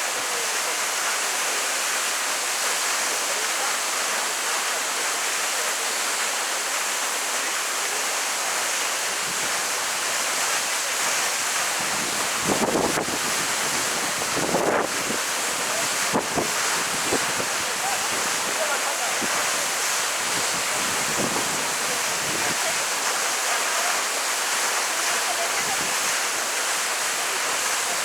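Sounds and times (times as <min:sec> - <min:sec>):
waterfall rushing: 0:00.0 - 0:28.0
wind gust on microphone: 0:11.8 - 0:18.6, 0:20.2 - 0:22.7.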